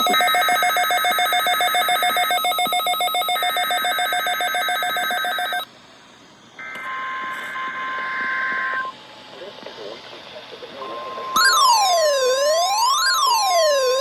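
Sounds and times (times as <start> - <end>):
rapid ringing electronic beep: 0.0 - 5.7, 11.4 - 14.0
warbling data bursts: 0.0 - 5.7.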